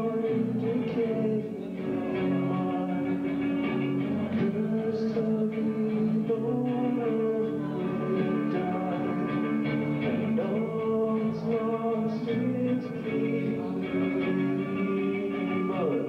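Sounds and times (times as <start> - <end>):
live rock band with singing: 0.0 - 16.0.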